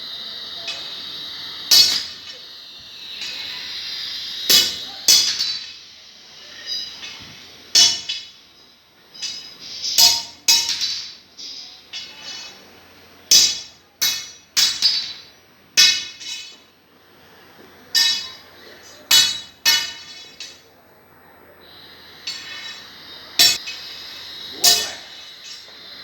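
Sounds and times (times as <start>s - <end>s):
hammer striking steel: 1.7s - 2.4s, 4.5s - 5.8s, 6.7s - 8.4s, 9.2s - 11.2s, 13.3s - 16.6s, 17.9s - 18.4s, 19.1s - 20.6s, 22.2s - 23.9s, 24.5s - 25.8s.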